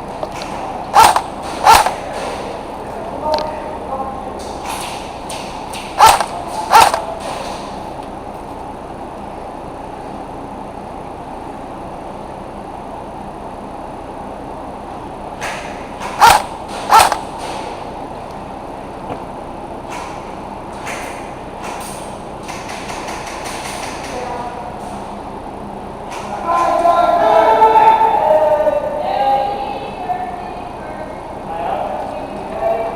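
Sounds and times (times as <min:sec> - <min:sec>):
airsoft gun shots: 0:01.0 - 0:02.0, 0:06.0 - 0:07.1, 0:16.1 - 0:17.4.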